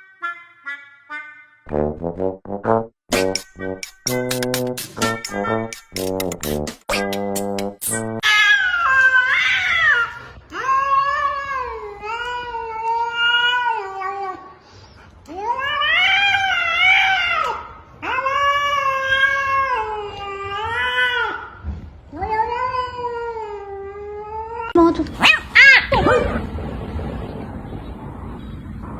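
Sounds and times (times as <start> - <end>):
cat meowing: 25.1 - 26.5.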